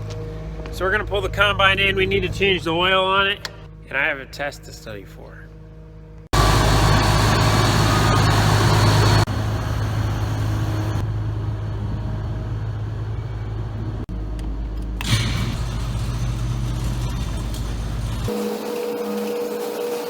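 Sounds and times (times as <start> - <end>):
heavy machinery engine running: 6.3 - 18.7.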